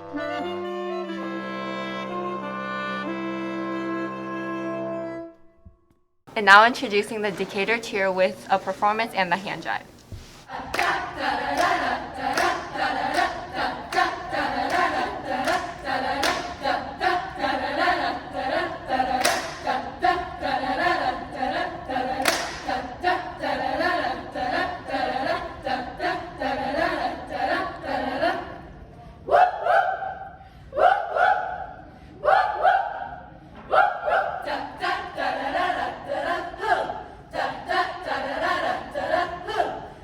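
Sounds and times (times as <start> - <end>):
choir singing a cappella: 0.0 - 5.3, 9.7 - 40.0
hand claps and slaps: 10.7 - 16.6, 19.2 - 19.7, 22.2 - 22.8.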